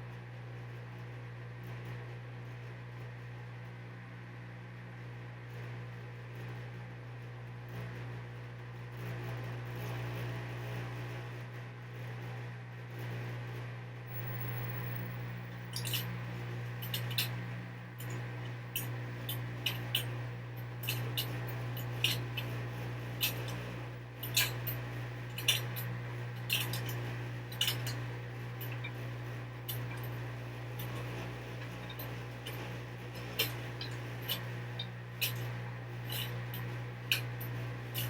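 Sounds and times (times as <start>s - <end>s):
washing machine hum: 14.0s - 38.0s.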